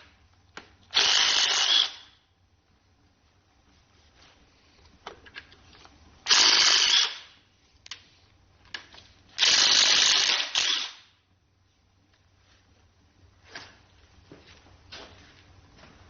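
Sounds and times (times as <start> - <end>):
power tool running: 0.9 - 2.1, 6.3 - 7.3, 9.4 - 11.0.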